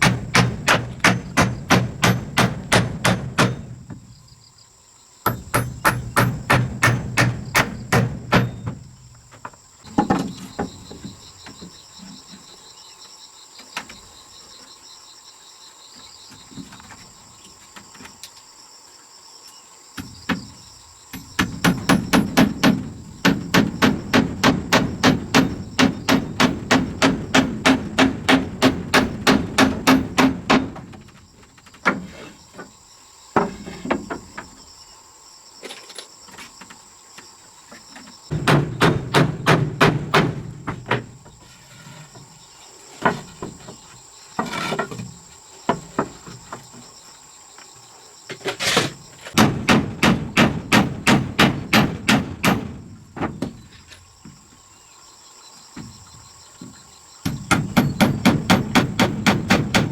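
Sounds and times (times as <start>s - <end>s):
hammer blows: 38.3s - 41.1s.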